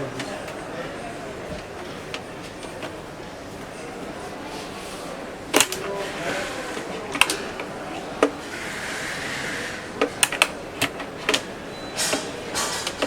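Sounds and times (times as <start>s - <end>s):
clicks and knocks of hard parts: 5.5s - 8.4s, 10.0s - 13.0s.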